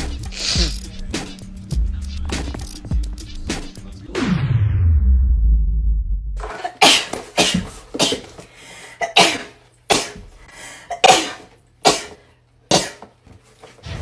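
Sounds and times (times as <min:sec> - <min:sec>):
woman sneezing: 0:00.4 - 0:00.8, 0:06.4 - 0:08.4, 0:09.0 - 0:13.1.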